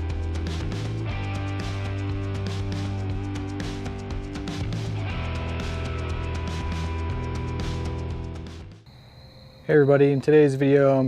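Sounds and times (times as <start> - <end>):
electric guitar: 0.0 - 8.4
steady drum beat: 0.0 - 8.8.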